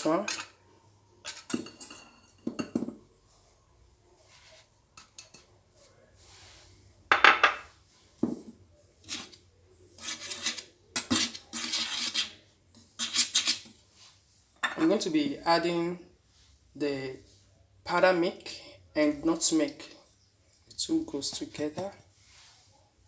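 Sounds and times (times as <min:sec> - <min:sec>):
utensils scraping a mixing bowl: 0:09.0 - 0:13.8.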